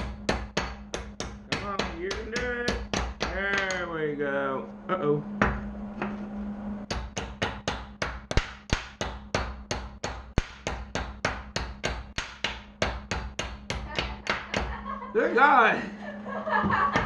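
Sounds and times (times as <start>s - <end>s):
hammer striking rapidly: 0.0s - 3.9s, 6.8s - 14.7s.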